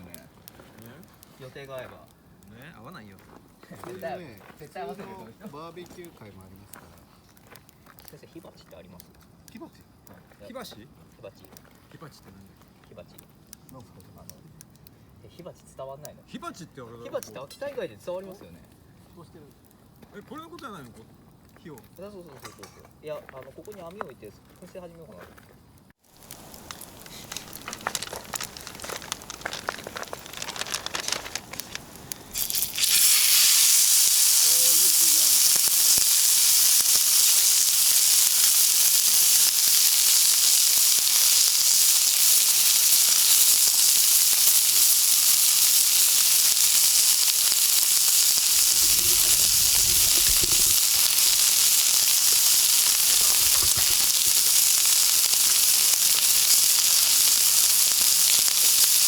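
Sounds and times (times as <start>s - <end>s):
food sizzling on a grill: 0.0s - 14.4s, 26.0s - 59.0s
faint crackling: 26.1s - 59.0s.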